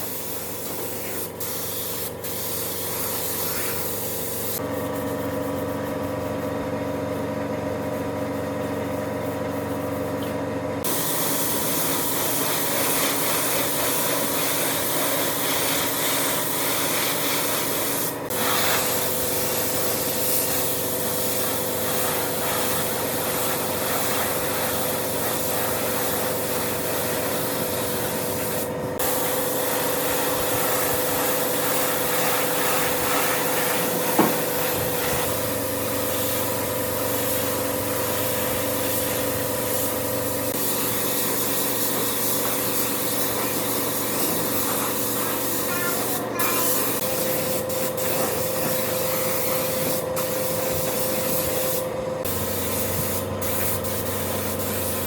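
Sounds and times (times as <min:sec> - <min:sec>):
short knock: 0:34.2 - 0:34.5.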